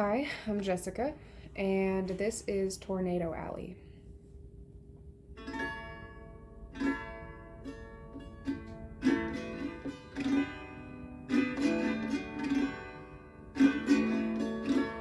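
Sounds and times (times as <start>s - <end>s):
acoustic plucked strings: 5.3s - 15.0s.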